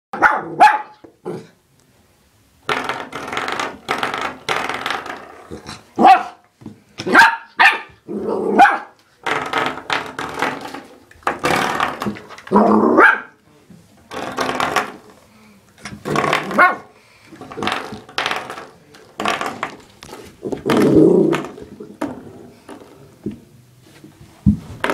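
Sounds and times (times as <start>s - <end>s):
dog barking and growling: 0.1s - 1.6s, 5.5s - 6.4s, 7.0s - 9.0s, 12.5s - 13.4s, 16.4s - 17.0s.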